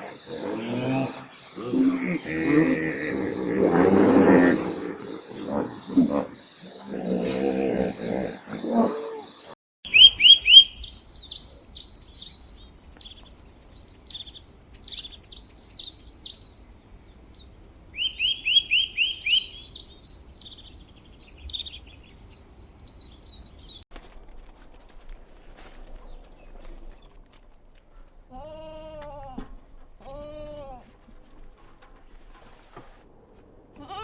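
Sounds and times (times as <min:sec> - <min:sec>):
animal pulsed call: 0:09.9 - 0:23.8
songbird singing: 0:09.9 - 0:23.8, 0:25.8 - 0:30.7.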